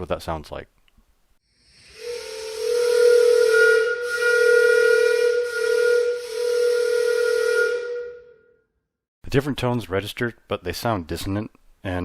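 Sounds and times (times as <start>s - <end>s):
whistle chord: 1.6s - 8.7s.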